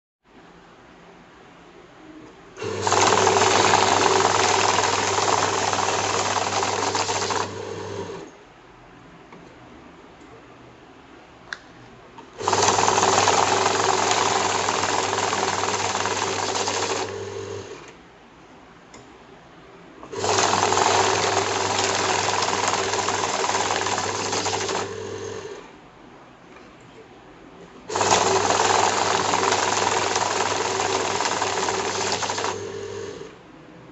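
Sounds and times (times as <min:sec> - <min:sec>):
banknote counting machine whirring: 0:02.6 - 0:08.3, 0:12.4 - 0:17.9, 0:20.1 - 0:25.6, 0:27.8 - 0:33.4.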